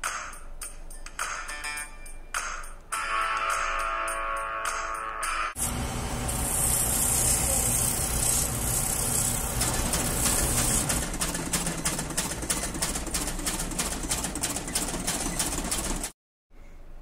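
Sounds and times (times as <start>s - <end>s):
machinery motor with high hiss: 5.6s - 11.0s
regular machine clacking: 8.2s - 16.1s.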